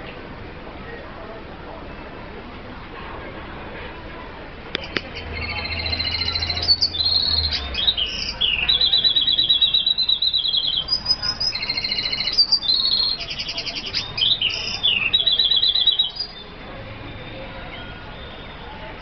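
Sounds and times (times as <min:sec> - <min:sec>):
bird singing trilled twittering: 0:04.8 - 0:18.7.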